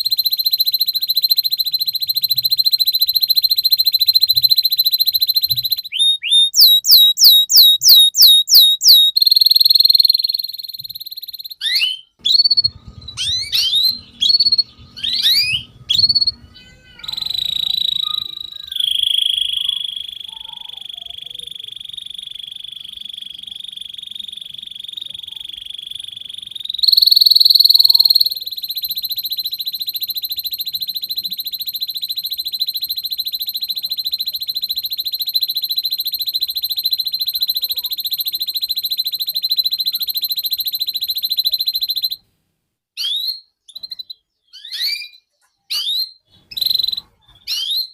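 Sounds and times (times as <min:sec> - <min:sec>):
canary singing: 0:00.0 - 0:42.2.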